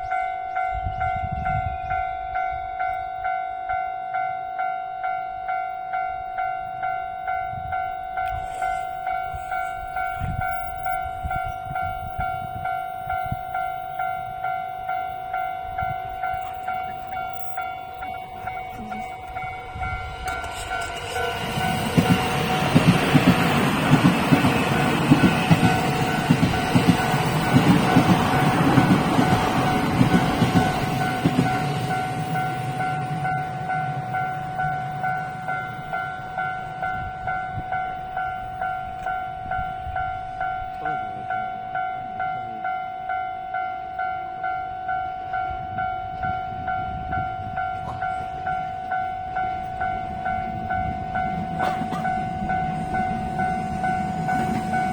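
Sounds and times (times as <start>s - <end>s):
crossing warning bell dinging: 0.0s - 54.9s
train rumbling past: 0.0s - 54.9s
wheels clacking over rail joints: 16.1s - 35.2s, 49.6s - 54.9s.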